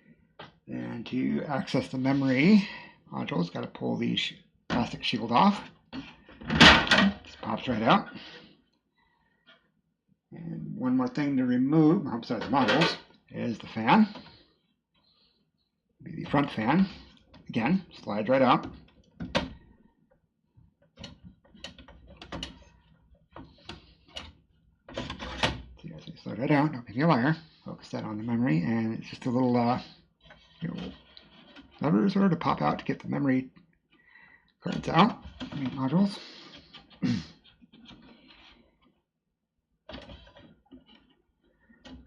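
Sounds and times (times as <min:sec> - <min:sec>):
fan module clicking and scraping: 0:21.0 - 0:26.2, 0:29.1 - 0:33.3, 0:34.7 - 0:39.0, 0:39.9 - 0:42.0.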